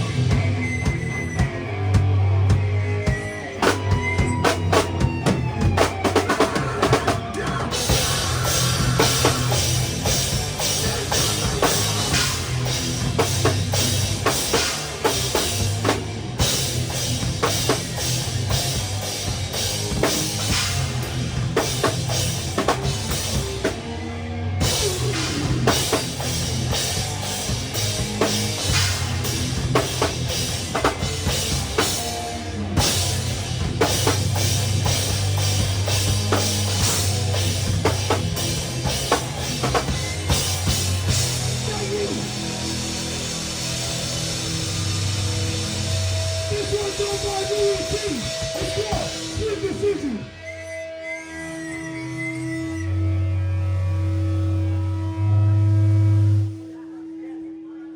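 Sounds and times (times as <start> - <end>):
live rock band playing: 0.0 - 56.6
drum kit hits: 24.6 - 41.8.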